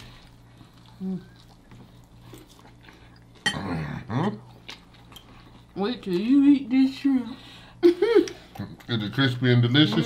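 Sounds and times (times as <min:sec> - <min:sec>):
person chewing food: 0:00.0 - 0:06.2, 0:08.2 - 0:09.2
steady low hum: 0:00.0 - 0:10.0.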